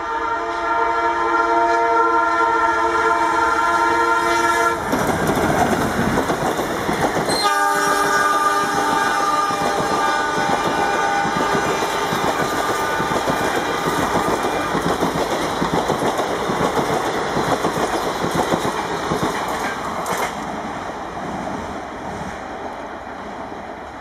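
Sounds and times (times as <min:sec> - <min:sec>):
train horn: 0:00.0 - 0:04.9, 0:07.3 - 0:14.8
train wheels rattling over rails: 0:04.7 - 0:22.6.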